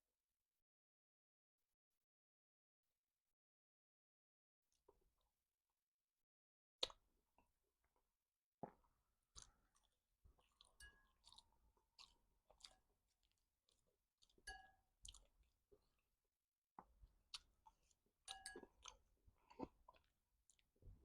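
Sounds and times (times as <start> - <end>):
person chewing food: 8.6 - 16.1, 16.8 - 21.0.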